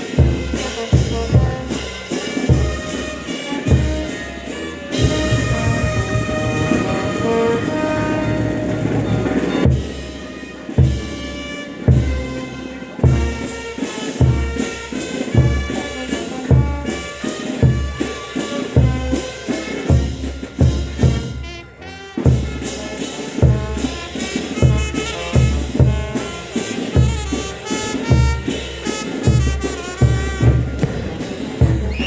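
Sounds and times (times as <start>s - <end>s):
horns playing a melody: 0.0s - 32.0s
bass drum beating: 4.9s - 9.9s, 29.2s - 32.0s.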